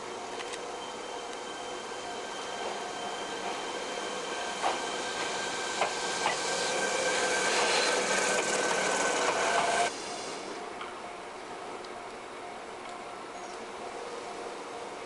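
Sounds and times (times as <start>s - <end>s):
electric train motor whine: 0.0s - 10.0s.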